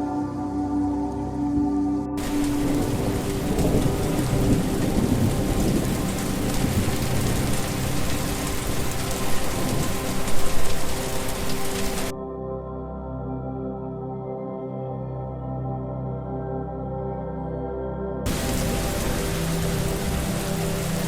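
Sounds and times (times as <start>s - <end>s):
heavy rain falling: 2.2s - 12.1s, 18.3s - 21.0s
thunder rumbling: 2.2s - 12.1s, 18.3s - 21.0s.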